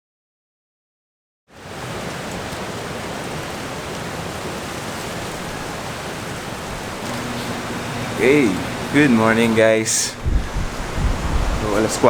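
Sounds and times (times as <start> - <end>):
strong wind rushing: 6.7 - 12.0
unsteady low rumble: 10.0 - 11.7.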